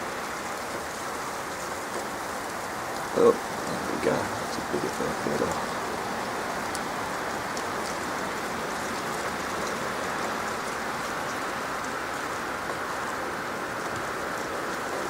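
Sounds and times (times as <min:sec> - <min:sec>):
sleet and rain hissing: 0:02.6 - 0:12.5.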